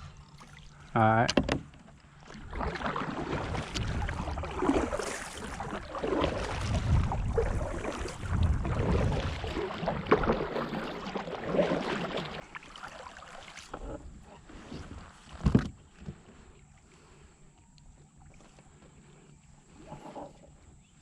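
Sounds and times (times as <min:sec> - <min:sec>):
water sloshing around kayak: 0:00.0 - 0:21.0
wind rumbling on microphone: 0:02.4 - 0:10.8.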